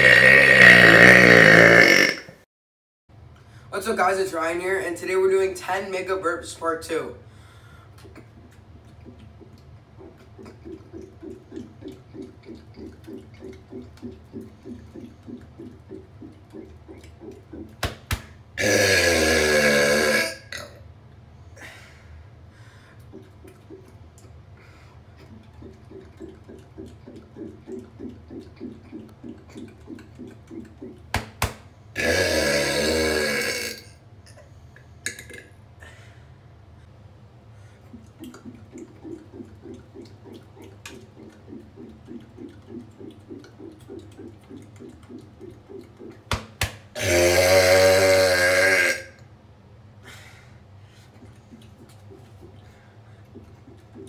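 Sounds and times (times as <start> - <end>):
man burping: 0.0 - 2.4, 18.6 - 20.8, 32.0 - 34.4, 47.0 - 49.2
person gulping a drink: 0.0 - 2.4, 7.9 - 21.0, 22.8 - 35.6, 37.8 - 49.4, 51.0 - 54.0
steady low hum: 3.1 - 54.0
soft low pulses: 37.8 - 46.3.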